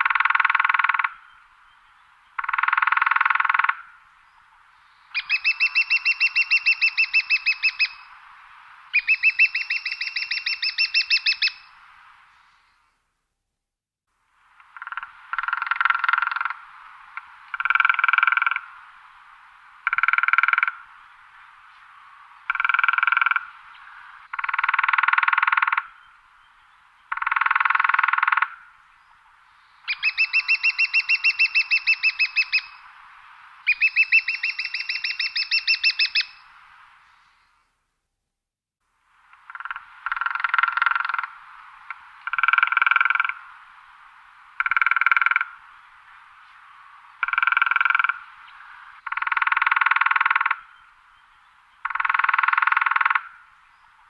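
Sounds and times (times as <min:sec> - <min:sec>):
woodpecker drumming on wood: 0:02.4 - 0:03.9, 0:14.6 - 0:18.7, 0:19.8 - 0:20.8, 0:22.5 - 0:23.5, 0:27.1 - 0:28.6, 0:39.3 - 0:43.4, 0:44.6 - 0:45.6, 0:47.2 - 0:48.2, 0:49.0 - 0:50.6, 0:51.8 - 0:53.4.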